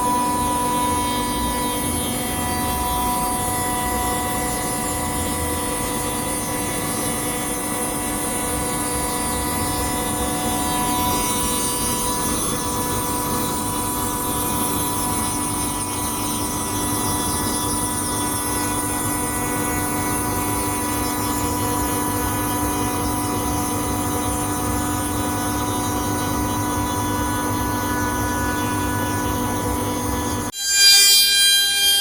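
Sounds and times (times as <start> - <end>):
cnc router running: 0.0 - 32.0.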